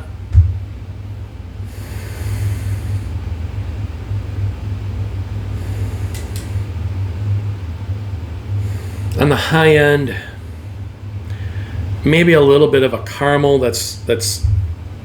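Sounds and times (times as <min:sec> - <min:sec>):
low rumble of microphone noise: 0:00.0 - 0:15.0.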